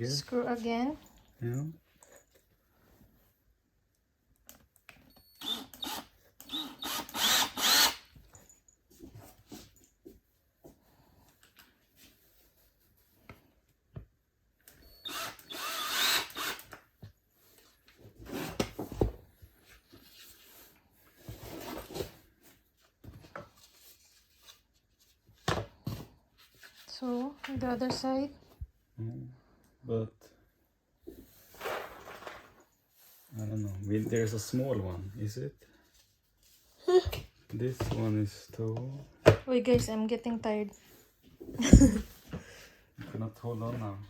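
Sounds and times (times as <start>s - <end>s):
cordless drill driving screws: 5.2s - 8.1s, 14.8s - 16.8s.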